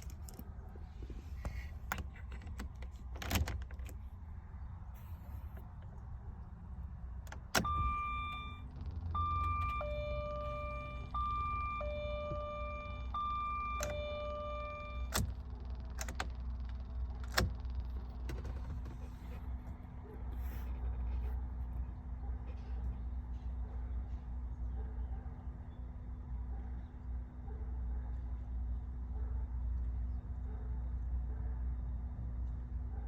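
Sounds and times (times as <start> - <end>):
two-tone warning chime: 7.6 - 15.1.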